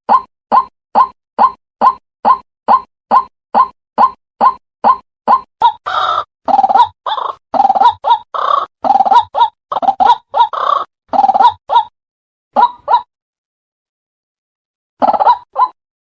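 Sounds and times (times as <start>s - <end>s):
waterhen croaking calls: 5.3s - 11.9s.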